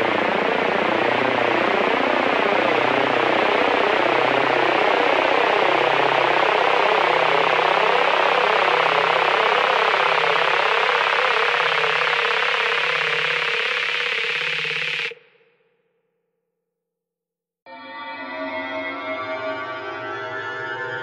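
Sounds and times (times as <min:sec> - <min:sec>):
harsh swirling noise drone: 0:00.0 - 0:15.1.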